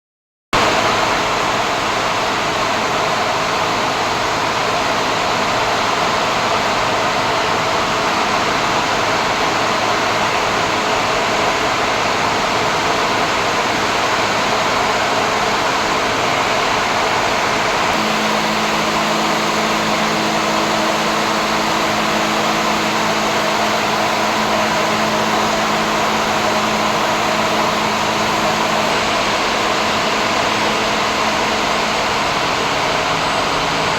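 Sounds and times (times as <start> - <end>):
machinery rushing airflow noise: 0.6 - 33.9
low steady hum: 17.9 - 33.5.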